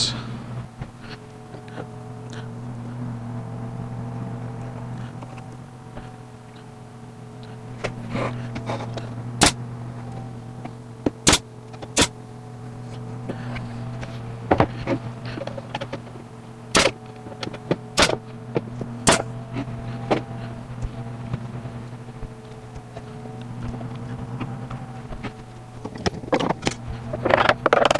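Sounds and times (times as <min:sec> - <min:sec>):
steady low hum: 0:00.0 - 0:27.9
nail gun firing into wood: 0:11.2 - 0:12.2, 0:16.8 - 0:17.0, 0:18.0 - 0:18.2, 0:19.0 - 0:19.3.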